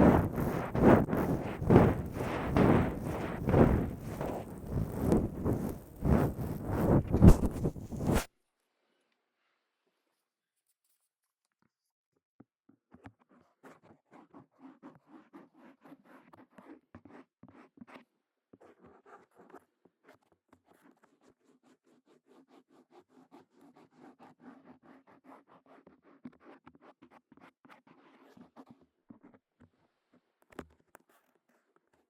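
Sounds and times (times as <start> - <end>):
scratching on microphone: 0.0 - 8.3.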